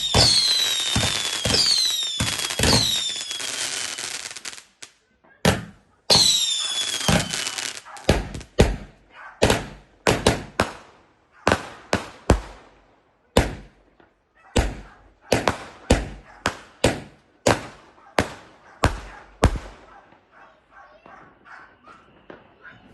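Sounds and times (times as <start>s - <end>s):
firecrackers banging: 0.0s - 4.8s, 5.5s - 10.9s.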